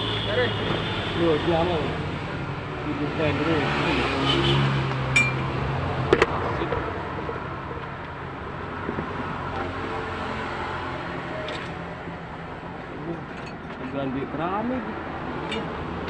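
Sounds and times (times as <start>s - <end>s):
metal tools clinking: 5.2s - 5.5s, 13.1s - 14.0s, 15.4s - 15.8s.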